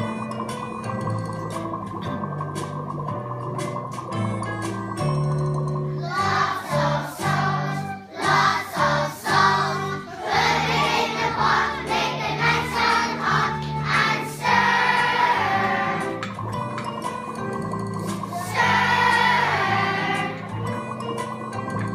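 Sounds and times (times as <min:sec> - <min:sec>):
musical accompaniment with bass: 0:00.0 - 0:21.9
children singing together: 0:06.0 - 0:16.3, 0:18.2 - 0:20.6.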